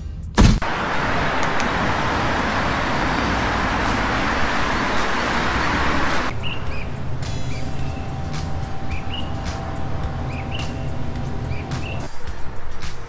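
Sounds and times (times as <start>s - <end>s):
loud thump: 0.4s - 0.7s
vehicle road noise rushing: 0.6s - 13.0s.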